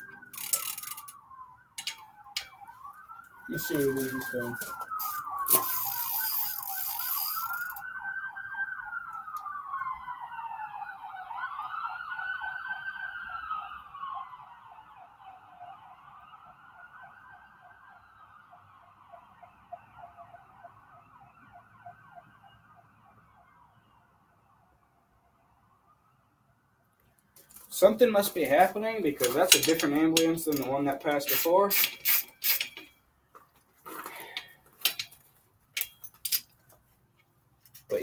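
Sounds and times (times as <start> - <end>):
ambulance siren wailing: 0.0 - 24.8, 27.6 - 32.9.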